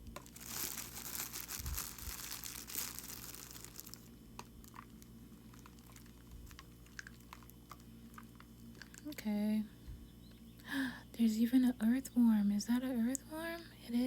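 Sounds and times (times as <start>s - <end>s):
soil rustling into container: 0.2s - 6.3s.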